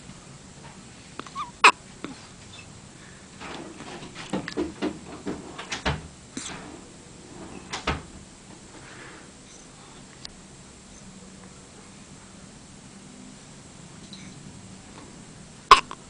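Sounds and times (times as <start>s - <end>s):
sharp hiccups: 1.2s - 2.7s, 15.7s - 16.0s.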